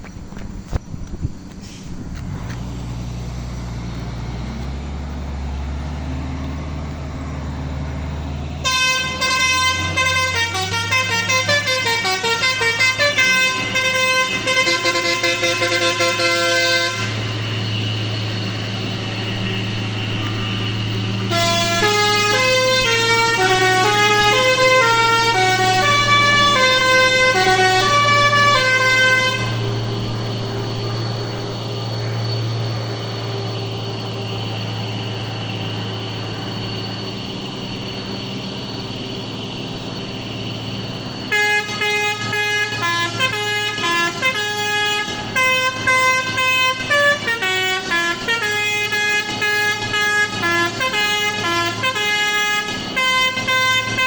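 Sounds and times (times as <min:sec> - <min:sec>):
truck engine running under load: 0:00.0 - 0:54.0
multi-tone melodic horn: 0:08.6 - 0:31.2, 0:41.3 - 0:54.0.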